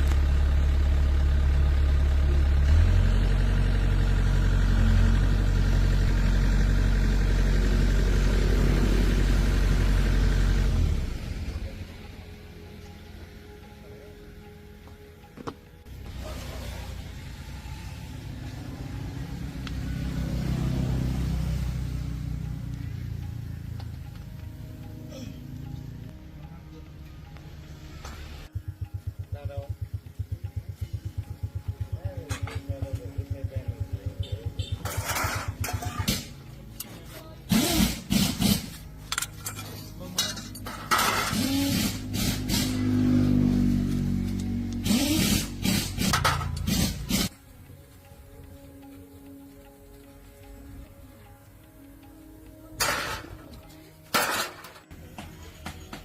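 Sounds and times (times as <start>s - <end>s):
vehicle engine humming: 0.0s - 56.0s
metallic clinks and knocks: 39.0s - 41.4s.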